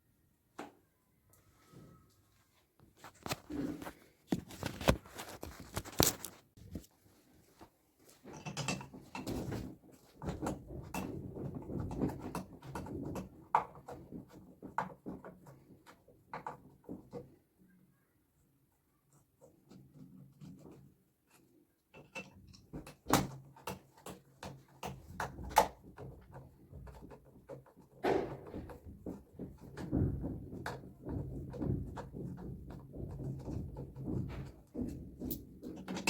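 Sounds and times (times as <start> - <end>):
scraping and rustling: 1.4 - 12.9
tools knocking and clicking: 8.3 - 9.4, 21.3 - 36.0.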